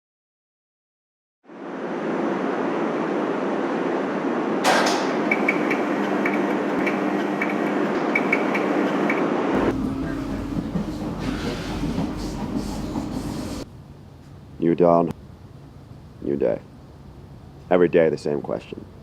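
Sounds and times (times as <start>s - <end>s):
train rumble: 4.1s - 14.6s
sharp clank: 4.6s - 5.6s.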